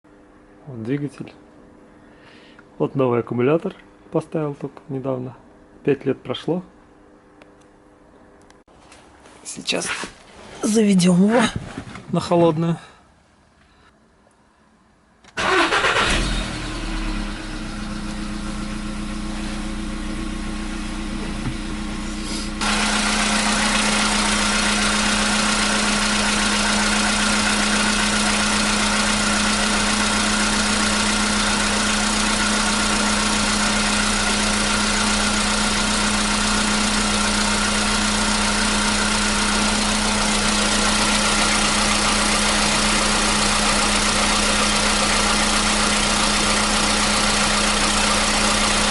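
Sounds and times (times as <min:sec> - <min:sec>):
engine cranking: 0:15.4 - 0:16.4
car engine idling: 0:15.4 - 0:48.9.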